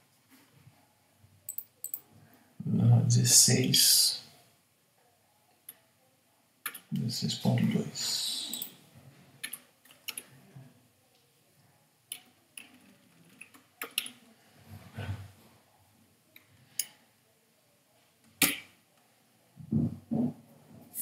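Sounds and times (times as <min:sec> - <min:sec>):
computer keyboard keystrokes: 0:01.5 - 0:02.0.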